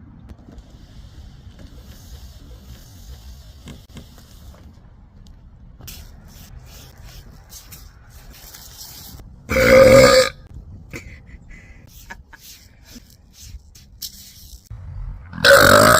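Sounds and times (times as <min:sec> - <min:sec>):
loud deep burp: 0:09.5 - 0:10.4, 0:15.3 - 0:15.9.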